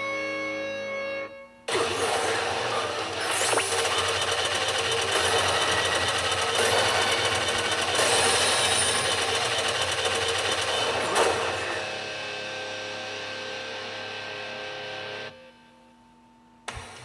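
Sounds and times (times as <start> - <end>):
pachinko machine rattle: 1.7 - 12.0.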